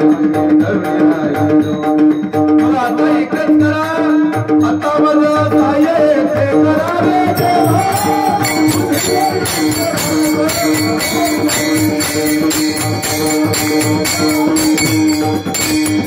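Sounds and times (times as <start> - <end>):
jingling metal percussion: 0.0 - 16.0
hand drum strokes: 6.9 - 16.0.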